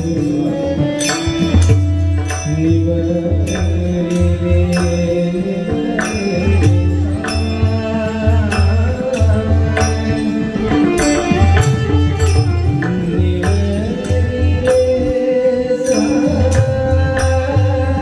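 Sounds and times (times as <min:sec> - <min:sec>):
hand drum beat: 0:00.0 - 0:15.1, 0:15.9 - 0:18.0
hand cymbal strikes: 0:00.0 - 0:18.0
loud high singing voice: 0:00.0 - 0:18.0.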